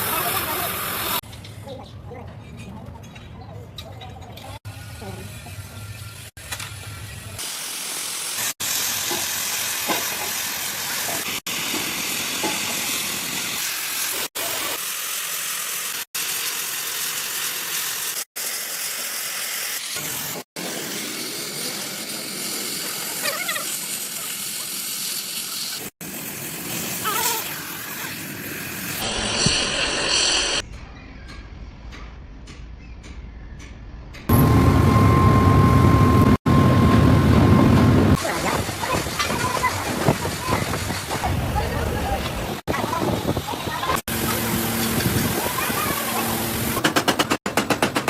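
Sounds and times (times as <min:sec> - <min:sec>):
hissing hot metalworking: 0:04.7 - 0:31.4, 0:36.2 - 0:48.0.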